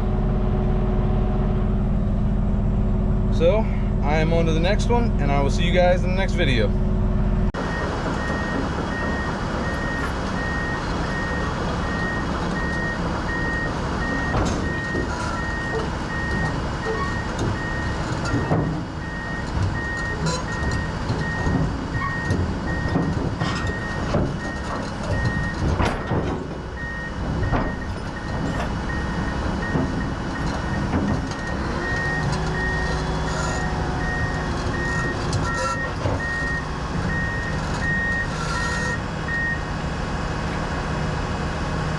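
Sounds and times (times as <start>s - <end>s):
diesel engine running: 0.0s - 41.9s
knocks and clanks: 14.0s - 39.0s.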